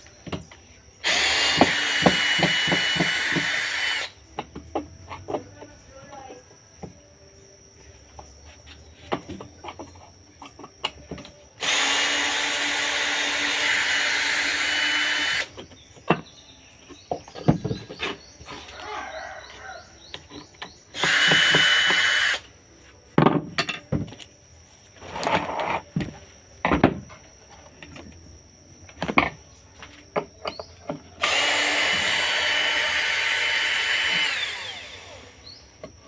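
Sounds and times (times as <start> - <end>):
handheld power tool motor: 1.0 - 4.2, 11.6 - 15.5, 20.9 - 22.5, 31.2 - 35.4.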